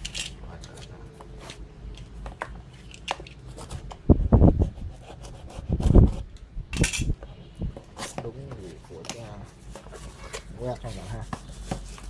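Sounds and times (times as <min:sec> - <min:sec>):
cardboard box rubbing: 0:07.9 - 0:12.0.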